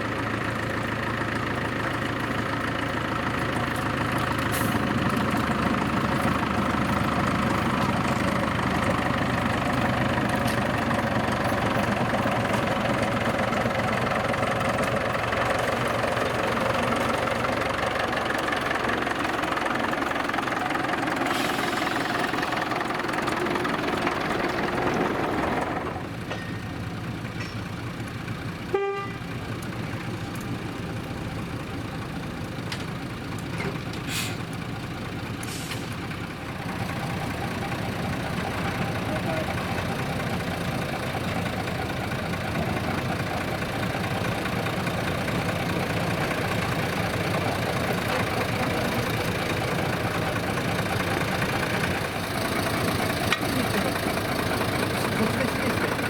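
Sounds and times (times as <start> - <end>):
diesel locomotive engine droning: 0.0 - 56.0
train on rails: 0.0 - 56.0
short horn toot: 28.7 - 29.2.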